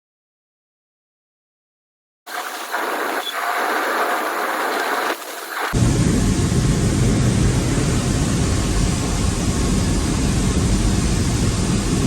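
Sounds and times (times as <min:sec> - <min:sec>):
wind buffeting microphone: 0:05.7 - 0:12.0.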